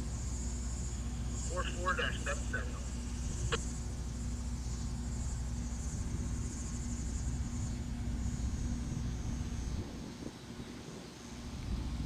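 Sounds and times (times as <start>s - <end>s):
crickets chirring: 0.0s - 9.8s.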